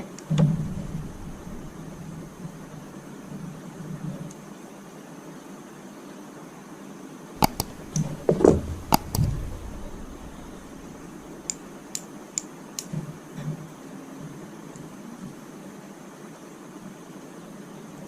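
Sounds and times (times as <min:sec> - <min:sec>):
steady hiss: 0:00.0 - 0:18.0
clicks from handling parts: 0:07.4 - 0:10.6
dull thump: 0:07.4 - 0:11.7.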